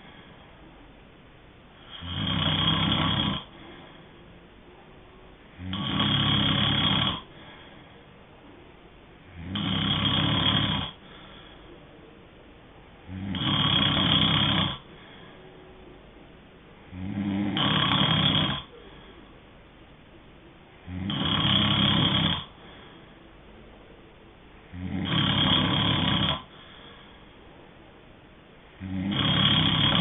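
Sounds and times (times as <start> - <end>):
low hiss: 0.0 - 30.0
person snoring: 1.8 - 4.0, 5.6 - 7.6, 9.3 - 11.5, 13.0 - 15.2, 16.9 - 19.2, 20.8 - 22.8, 24.7 - 27.0, 28.8 - 30.0.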